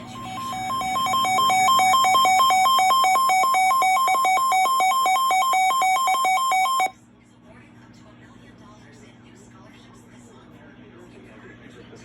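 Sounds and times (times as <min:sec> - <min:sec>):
two-pitch electronic alert signal: 0:00.0 - 0:06.9.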